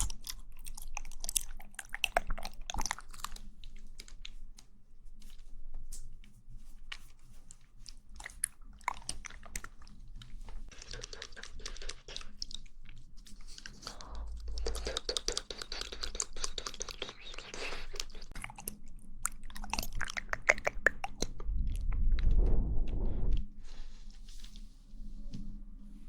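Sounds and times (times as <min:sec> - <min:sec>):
wet chewing and lip smacks: 0:00.0 - 0:04.6, 0:07.8 - 0:22.4
low rumble: 0:13.8 - 0:15.0, 0:21.0 - 0:24.2.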